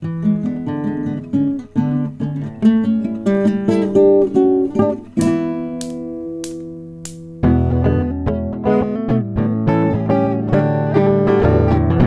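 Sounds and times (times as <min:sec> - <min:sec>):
acoustic guitar playing: 0:00.0 - 0:07.9.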